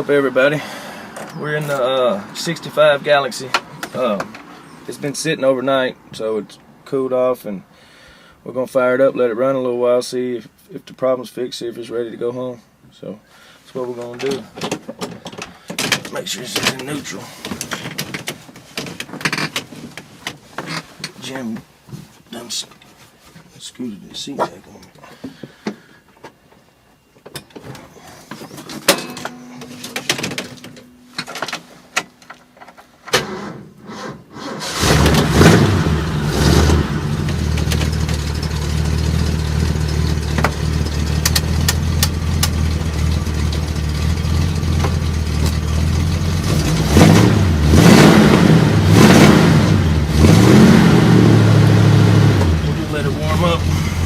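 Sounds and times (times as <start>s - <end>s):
clicks and knocks: 14.2s - 21.2s, 27.2s - 33.3s
engine revving: 33.3s - 54.0s
car engine idling: 34.7s - 46.8s, 50.7s - 54.0s.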